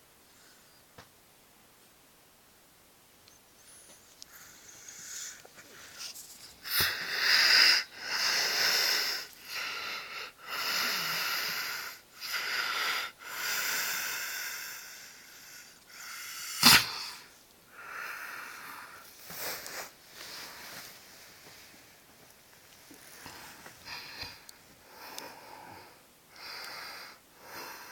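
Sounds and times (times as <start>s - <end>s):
wheezy snoring: 6.6s - 19.9s
short sharp loud sound: 16.6s - 17.2s.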